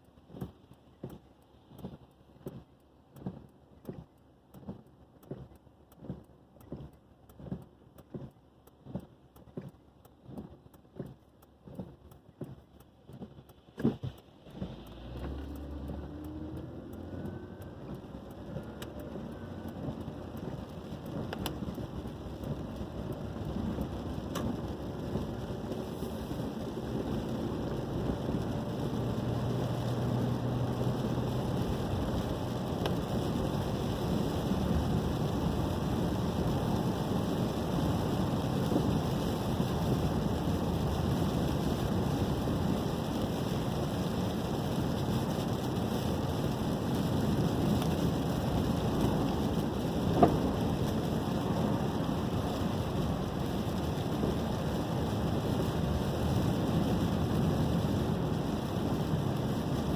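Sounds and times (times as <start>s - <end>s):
low vehicle rumble: 0.0s - 59.9s
rain-like hiss: 10.2s - 59.9s.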